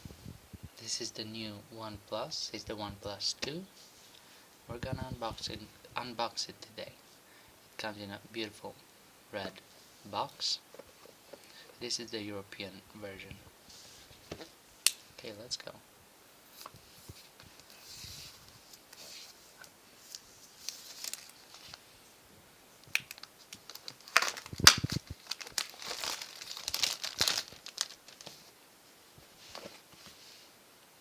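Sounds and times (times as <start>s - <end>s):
packaging crinkling and tearing: 20.1s - 21.8s, 22.9s - 28.4s.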